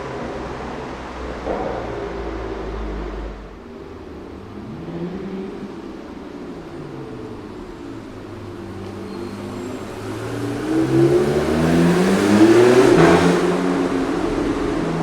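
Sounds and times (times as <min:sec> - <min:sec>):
car engine accelerating in tunnel: 0:00.0 - 0:15.0.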